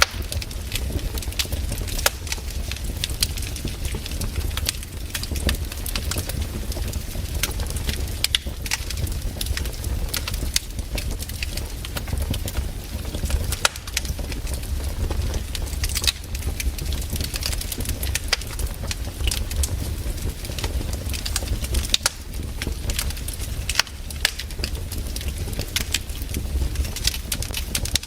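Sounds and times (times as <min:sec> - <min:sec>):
firewood crackling and popping: 0:00.0 - 0:28.0
low rumble: 0:12.0 - 0:20.6.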